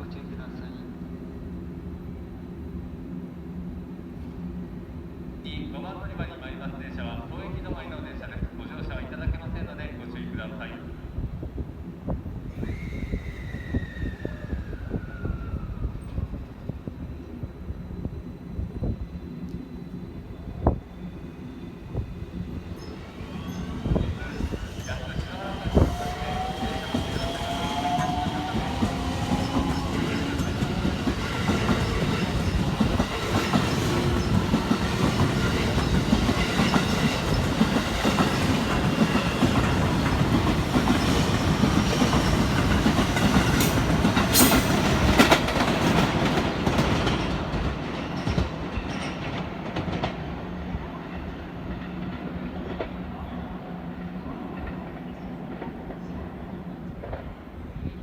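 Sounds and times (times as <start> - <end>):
train wheels clattering: 24.4 - 50.3.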